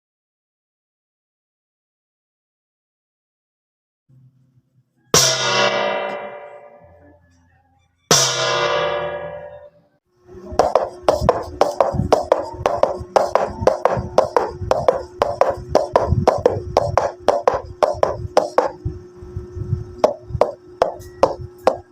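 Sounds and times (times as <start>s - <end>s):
steady low hum: 4.1s - 21.9s
single ringing strike: 5.2s - 7.2s, 8.1s - 9.9s
fast sharp knocks: 10.6s - 18.8s, 20.0s - 21.9s.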